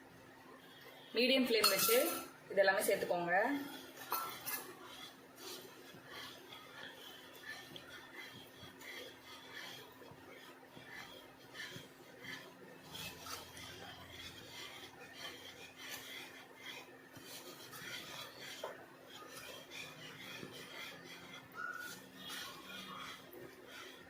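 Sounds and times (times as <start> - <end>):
utensil scraping a pan: 1.2 - 24.0.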